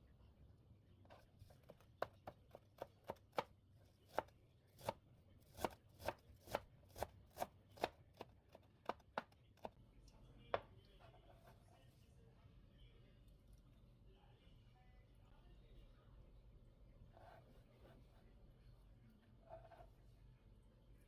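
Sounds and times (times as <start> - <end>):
knife chopping on cutting board: 1.1 - 9.8.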